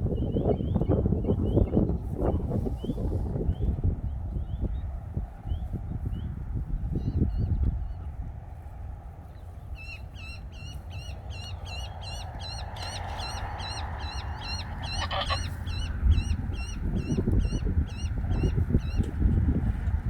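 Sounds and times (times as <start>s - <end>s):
bird calling: 9.8s - 19.1s.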